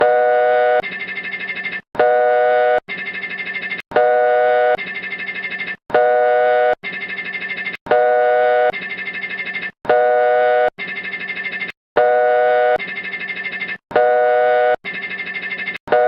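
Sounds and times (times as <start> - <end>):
synthesized alarm tone: 0.0 - 16.0.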